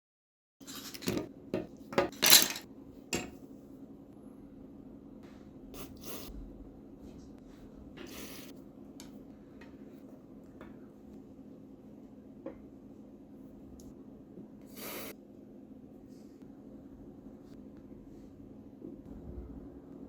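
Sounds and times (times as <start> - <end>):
steady low hum: 2.6 - 20.0.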